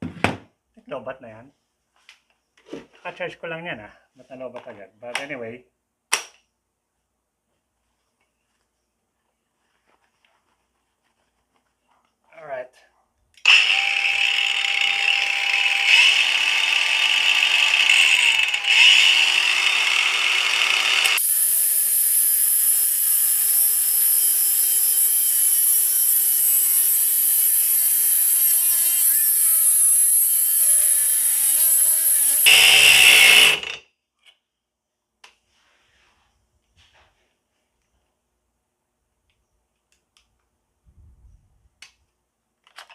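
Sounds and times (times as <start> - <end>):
angle grinder running: 13.5 - 33.8
grinder screeching cutting steel: 13.5 - 33.8.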